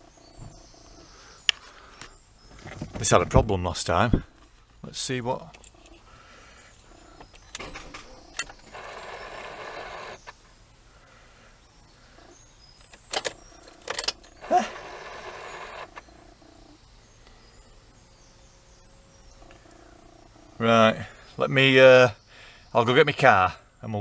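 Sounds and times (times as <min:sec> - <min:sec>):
starter motor whirring: 0:07.0 - 0:10.4, 0:12.1 - 0:16.8
starter clicks: 0:07.2 - 0:10.4, 0:12.8 - 0:16.2.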